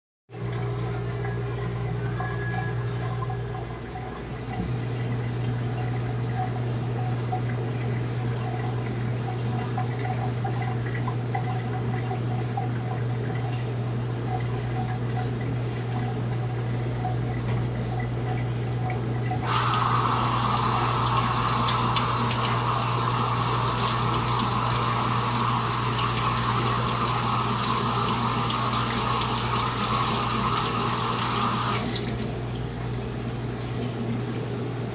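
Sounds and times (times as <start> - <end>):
water tap running: 18.0 - 34.9.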